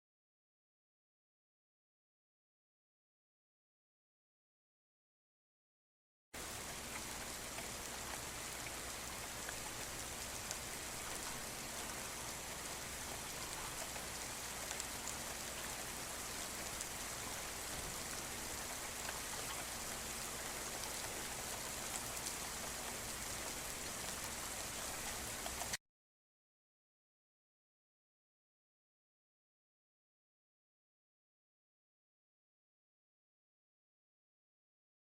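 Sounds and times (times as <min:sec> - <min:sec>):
steady rain hiss: 0:06.4 - 0:25.8.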